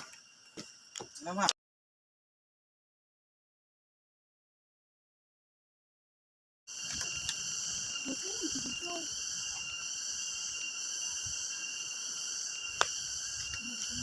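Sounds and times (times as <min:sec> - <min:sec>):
insects shrilling: 0:06.7 - 0:14.0.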